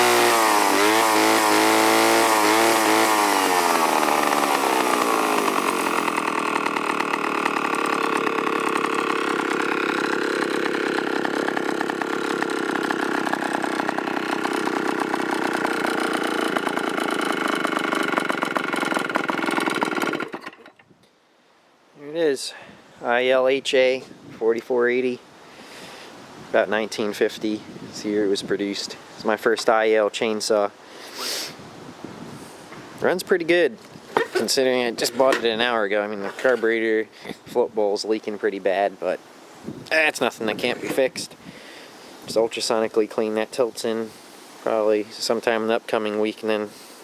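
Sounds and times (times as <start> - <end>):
chainsaw engine idling: 0.0 - 20.8, 34.2 - 37.4.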